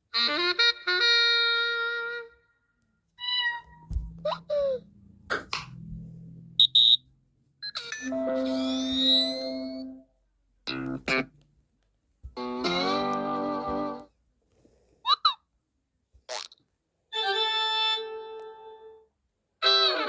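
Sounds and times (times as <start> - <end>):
low hum: 3.9 - 6.9
bell-like notification chime: 8.0 - 9.9.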